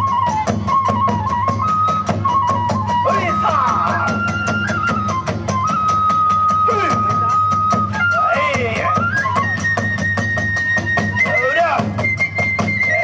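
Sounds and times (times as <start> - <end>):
bamboo flute long notes: 0.0 - 13.0
fast drum beat: 3.0 - 5.8, 6.6 - 9.6.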